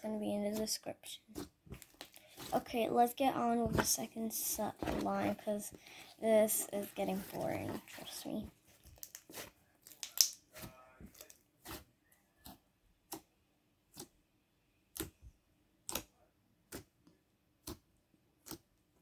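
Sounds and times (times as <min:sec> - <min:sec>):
air bubbles popping in slime: 0:09.9 - 0:10.4.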